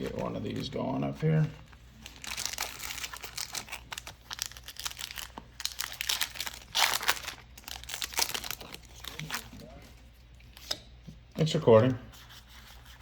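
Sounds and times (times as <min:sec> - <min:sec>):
foil wrapper crinkling and tearing: 0:00.0 - 0:09.6.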